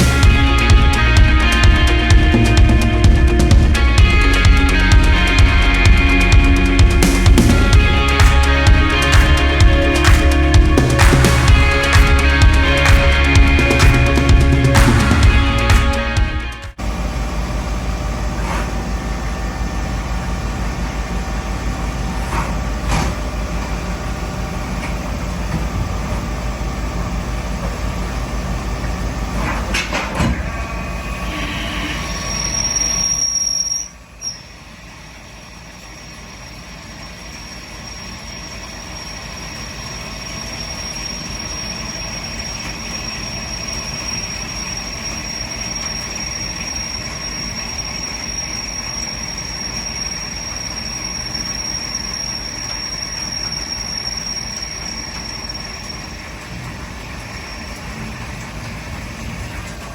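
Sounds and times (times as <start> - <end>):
high-pitched whine: 0.0 - 59.9
machine noise with low hum: 0.0 - 59.9.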